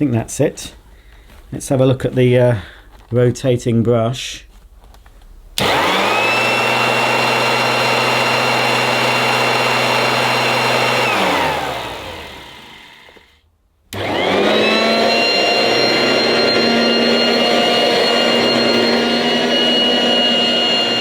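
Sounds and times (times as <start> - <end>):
hand-held vacuum cleaner whining: 5.6 - 21.0.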